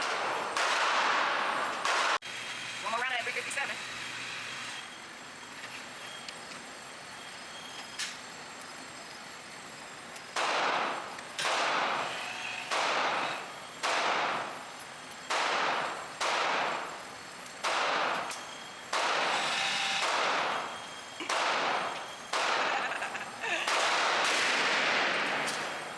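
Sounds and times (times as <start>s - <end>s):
handgun shots with echo: 0.0s - 2.2s, 10.4s - 12.0s, 12.7s - 13.2s, 13.8s - 14.4s, 15.3s - 16.8s, 17.6s - 19.4s, 20.0s - 20.6s, 21.2s - 22.7s, 23.7s - 25.8s.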